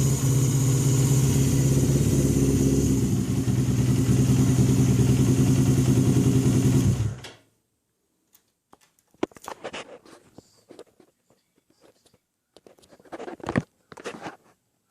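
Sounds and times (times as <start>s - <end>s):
motorcycle engine running: 0.0s - 7.2s
faint clicks and knocks: 8.2s - 14.6s.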